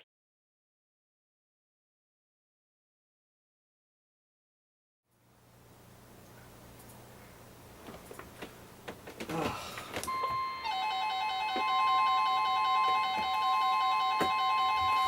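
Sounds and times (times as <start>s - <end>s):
steady alarm tone: 10.1s - 15.0s
warbling receiver alarm: 10.1s - 15.0s.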